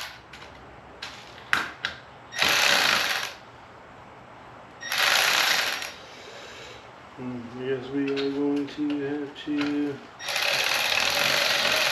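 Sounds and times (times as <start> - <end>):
power tool running: 2.4 - 3.4, 4.8 - 6.0, 10.2 - 11.9.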